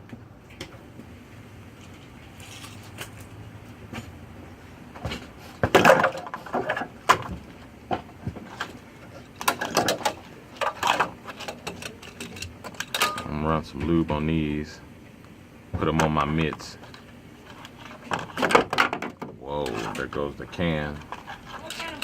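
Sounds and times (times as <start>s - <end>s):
crackly rustling and clatter: 1.7s - 4.2s, 4.9s - 13.3s, 16.0s - 22.0s
parts clicking and knocking: 5.0s - 14.0s, 15.8s - 22.0s.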